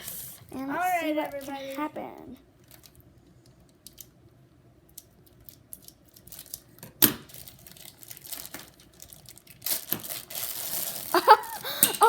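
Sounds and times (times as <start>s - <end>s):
plastic packaging tearing and crinkling: 2.6s - 3.0s, 5.3s - 11.6s
scissors cutting plastic packaging: 6.1s - 11.6s.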